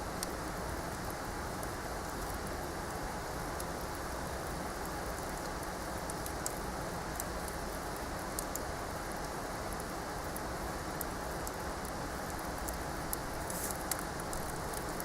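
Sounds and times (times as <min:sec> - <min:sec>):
campfire crackling and popping: 0:00.2 - 0:00.4, 0:12.7 - 0:15.0
steady rushing hiss: 0:12.7 - 0:15.0.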